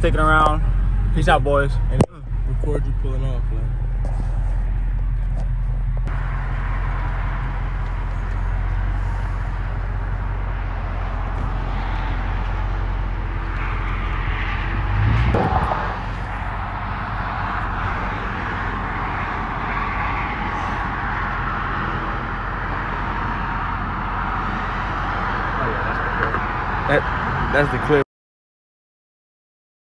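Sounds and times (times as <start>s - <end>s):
car engine idling and revving: 6.1s - 28.0s.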